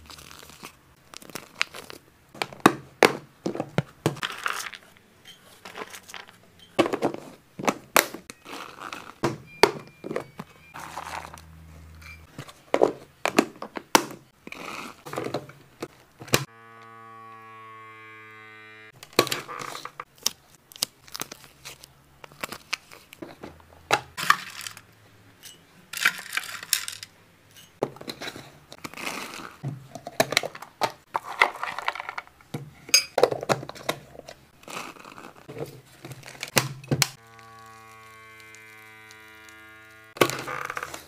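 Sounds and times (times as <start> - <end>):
plastic packaging crinkling: 0.0 - 2.6, 4.2 - 6.4, 8.2 - 9.2, 10.0 - 12.7, 19.1 - 23.4, 28.4 - 29.6, 34.5 - 41.0.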